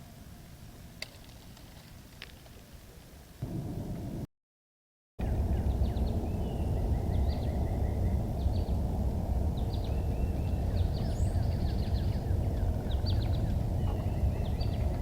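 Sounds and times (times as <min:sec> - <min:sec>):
steady low rumbling: 0:03.4 - 0:04.3, 0:05.2 - 0:15.0
small birds chirping: 0:05.4 - 0:15.0.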